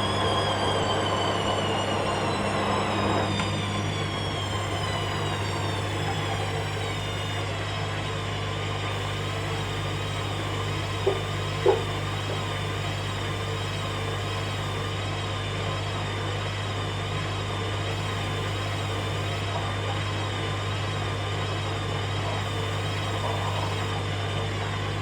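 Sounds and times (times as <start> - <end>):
steady low hum: 0.0 - 7.5, 8.9 - 15.0, 17.9 - 19.6, 22.2 - 24.0
washing machine motor whining: 0.0 - 7.7, 8.8 - 15.2, 17.7 - 24.2.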